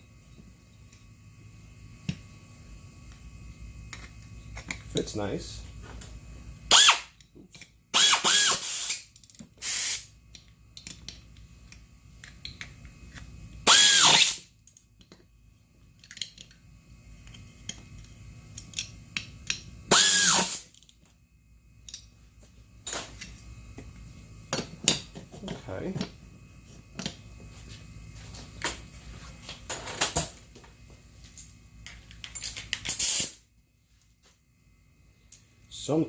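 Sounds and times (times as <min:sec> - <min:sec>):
cordless drill spinning: 0:06.7 - 0:07.1, 0:08.0 - 0:09.0, 0:13.7 - 0:14.4, 0:19.9 - 0:20.6
tools clicking and tapping: 0:07.2 - 0:07.8, 0:10.3 - 0:13.2, 0:16.0 - 0:16.6, 0:17.2 - 0:19.7, 0:21.8 - 0:22.1.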